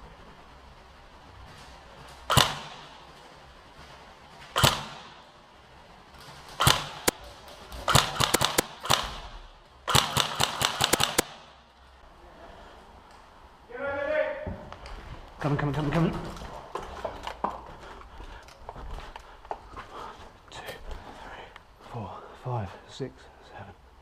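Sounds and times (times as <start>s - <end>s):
airsoft gun shots: 2.3s - 3.0s, 4.6s - 5.2s, 6.6s - 7.2s, 7.8s - 11.6s.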